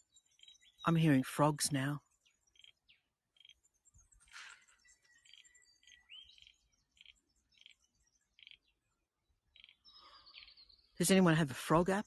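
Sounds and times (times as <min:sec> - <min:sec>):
frogs chirping: 0:02.2 - 0:03.8, 0:05.0 - 0:11.4.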